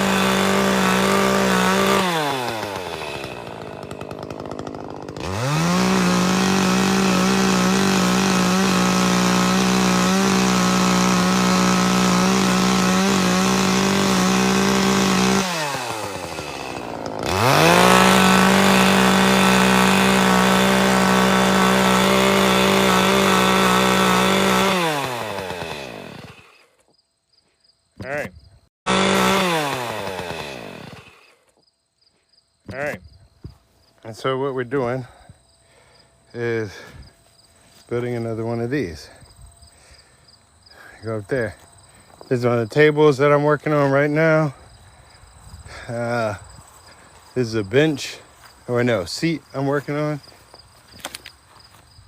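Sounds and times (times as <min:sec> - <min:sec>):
chainsaw revving: 0:00.0 - 0:26.7, 0:28.9 - 0:31.5, 0:34.9 - 0:37.1, 0:45.7 - 0:50.2.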